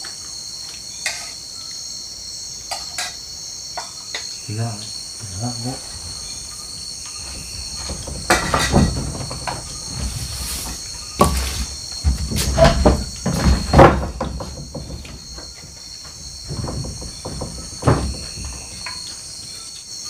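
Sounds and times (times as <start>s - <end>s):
night insects chirring: 0.0s - 20.0s
knocks rustles and scrapes: 5.3s - 19.6s.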